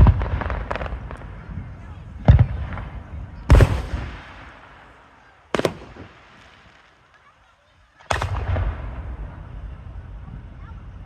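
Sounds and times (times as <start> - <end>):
firework shells booming: 0.0 - 7.0, 8.0 - 9.5.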